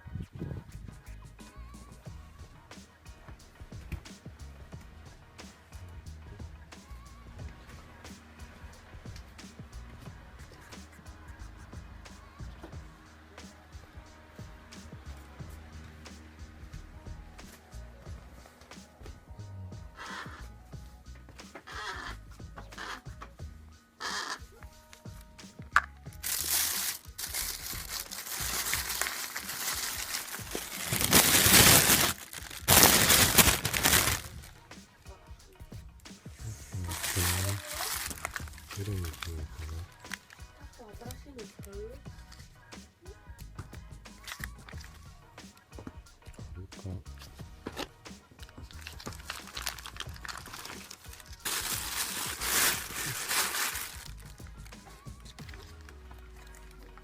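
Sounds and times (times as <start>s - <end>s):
crumpling and crinkling: 26.1s - 34.6s, 36.8s - 40.4s, 47.7s - 57.0s.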